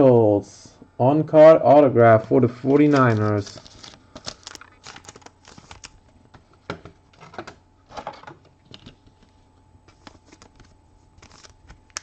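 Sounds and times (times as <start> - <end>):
cards clicking and rustling: 2.8 - 9.1, 9.9 - 12.0.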